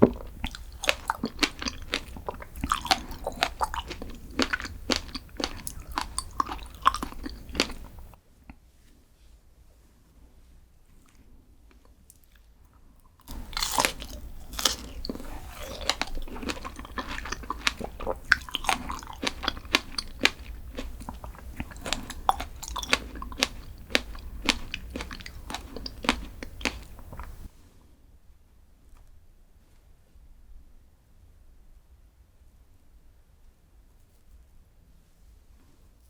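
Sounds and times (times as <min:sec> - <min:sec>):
crunchy food chewing: 0:00.0 - 0:08.2, 0:13.2 - 0:27.6.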